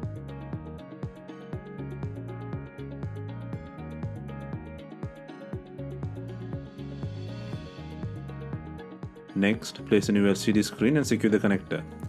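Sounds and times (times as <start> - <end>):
kick drum: 0.0 - 9.2.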